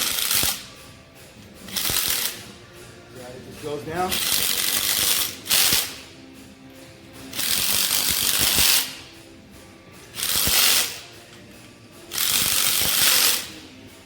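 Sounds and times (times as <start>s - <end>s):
hand ratchet clicking: 0.0s - 0.7s, 1.6s - 2.4s, 4.0s - 6.0s, 7.3s - 9.1s, 10.1s - 11.1s, 12.1s - 13.6s.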